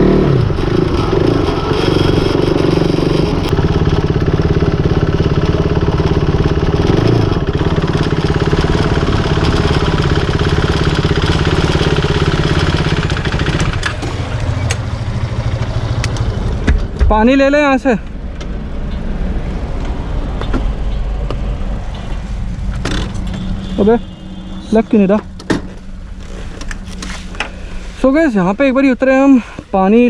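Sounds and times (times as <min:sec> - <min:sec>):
motorcycle engine running: 0:00.0 - 0:18.9.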